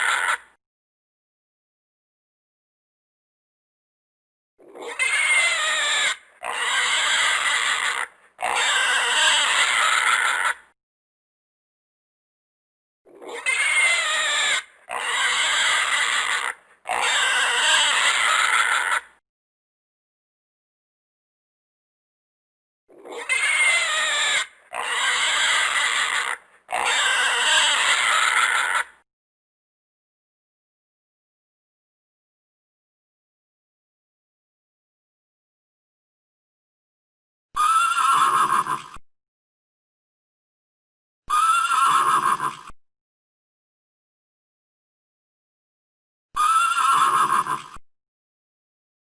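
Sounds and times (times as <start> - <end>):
loud animal calls: 0.0 - 0.5, 4.7 - 10.7, 13.1 - 19.2, 22.9 - 29.0, 37.6 - 39.0, 41.3 - 42.8, 46.4 - 47.8
horse squealing: 13.3 - 19.1, 37.6 - 39.0, 41.3 - 42.8, 46.4 - 47.8.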